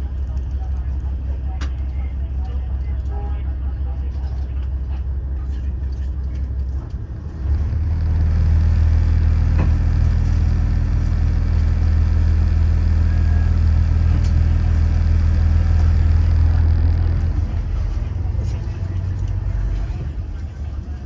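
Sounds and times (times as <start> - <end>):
diesel engine idling: 7.2 - 21.0.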